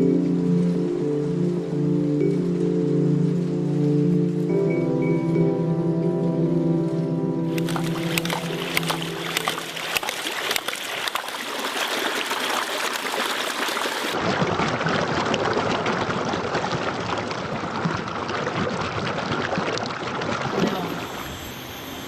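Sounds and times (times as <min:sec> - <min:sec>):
running water splashing: 0:07.5 - 0:21.2.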